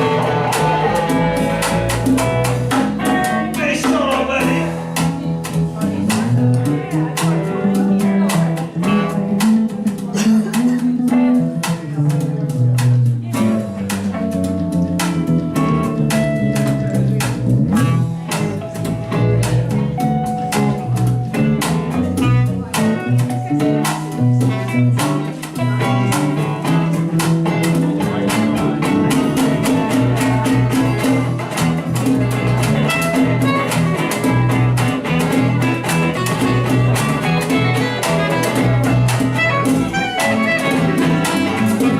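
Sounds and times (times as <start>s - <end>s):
band music with guitar: 0.0s - 41.9s
steady percussive beat: 0.0s - 41.9s.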